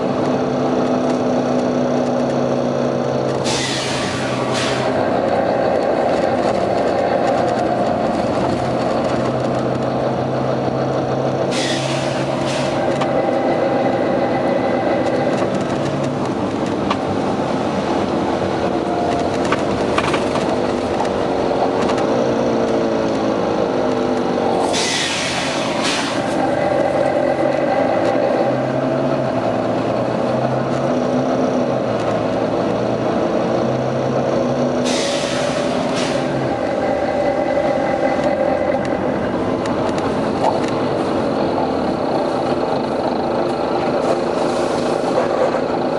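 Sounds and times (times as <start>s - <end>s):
bus diesel engine running: 0.0s - 45.9s
compressed-air hiss: 24.7s - 26.2s.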